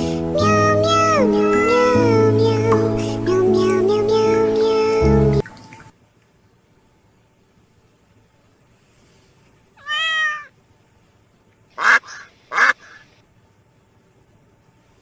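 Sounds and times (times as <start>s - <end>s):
kitten meowing: 1.4s - 2.0s, 9.8s - 10.5s
harsh animal cries: 9.8s - 10.5s.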